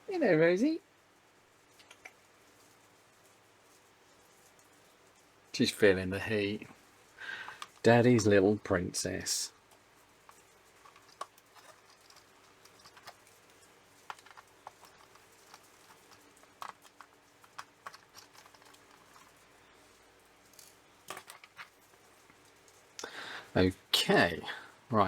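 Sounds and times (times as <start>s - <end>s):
small clicks and taps: 1.8s - 2.2s.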